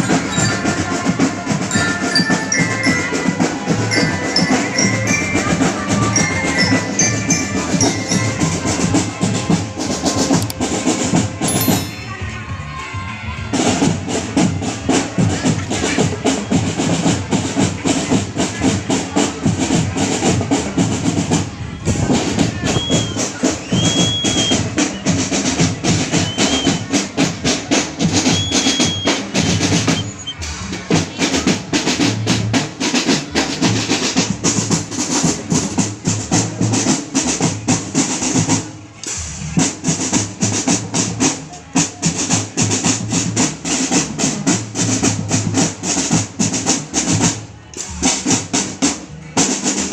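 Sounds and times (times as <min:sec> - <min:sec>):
snare and bass drums: 0:00.0 - 0:49.9
whistle blasts: 0:22.6 - 0:25.2, 0:26.0 - 0:26.9, 0:28.2 - 0:30.4.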